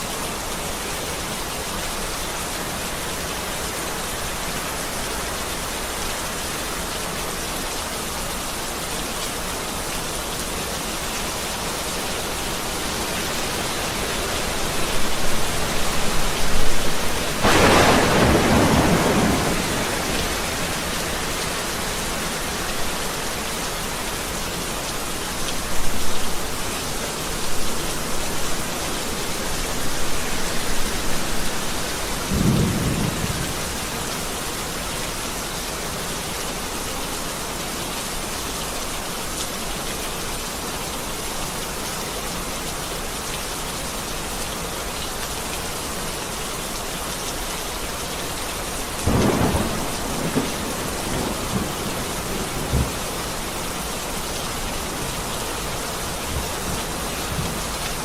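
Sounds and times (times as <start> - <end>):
heavy rain pouring: 0.0 - 58.0
thunder rumbling: 14.0 - 23.0, 28.9 - 33.9, 49.1 - 53.1.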